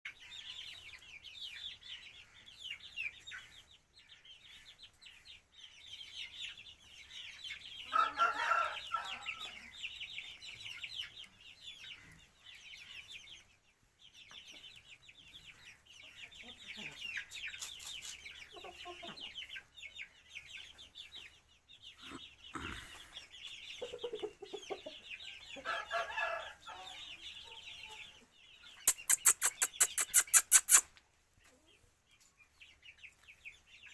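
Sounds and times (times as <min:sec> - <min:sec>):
chickens clucking: 0:00.1 - 0:33.9
high-pitched chirping: 0:28.8 - 0:30.9.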